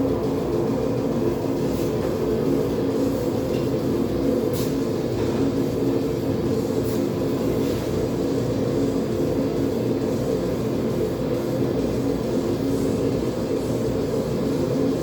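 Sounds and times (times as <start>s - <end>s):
forge burner rumbling: 0.0s - 15.0s.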